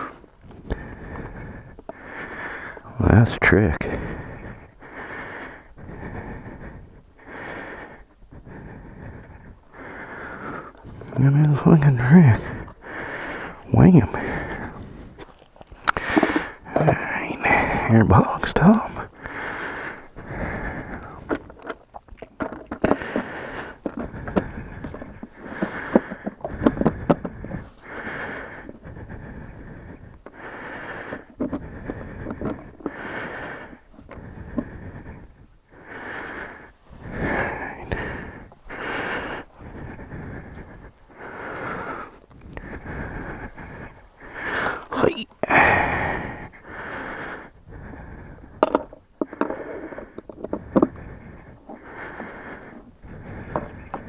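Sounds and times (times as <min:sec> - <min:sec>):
rustling and scraping parts: 0:14.6 - 0:17.4, 0:20.0 - 0:27.9, 0:48.6 - 0:51.0
plastic knocks and clicks: 0:48.6 - 0:49.6.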